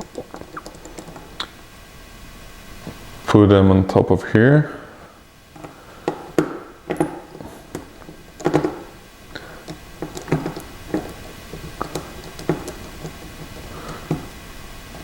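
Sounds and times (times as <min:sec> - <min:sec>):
small tools clicking and tapping: 0:05.6 - 0:14.4.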